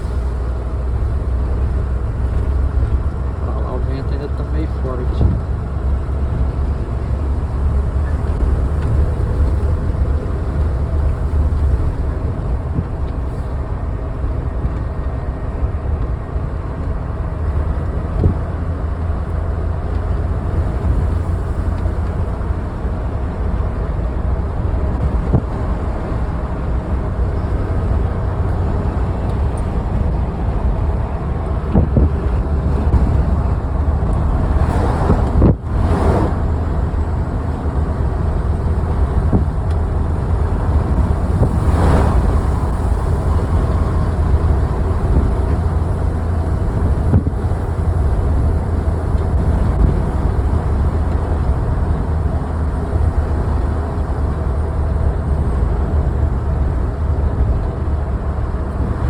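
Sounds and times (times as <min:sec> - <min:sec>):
road noise: 0:00.0 - 0:59.0
wind buffeting microphone: 0:00.0 - 0:59.0
vehicles swishing past: 0:19.8 - 0:53.5.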